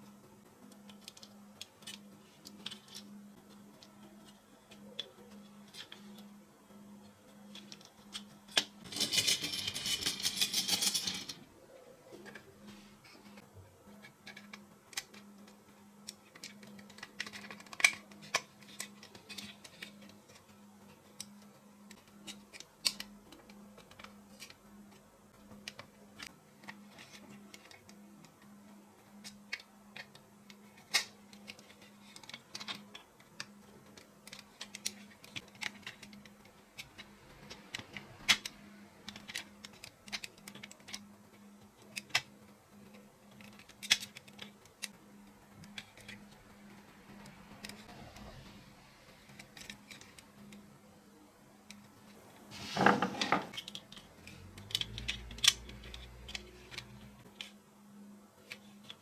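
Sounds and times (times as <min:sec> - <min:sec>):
small hard parts clicking: 0:07.3 - 0:11.4, 0:13.3 - 0:48.4, 0:52.8 - 0:57.6.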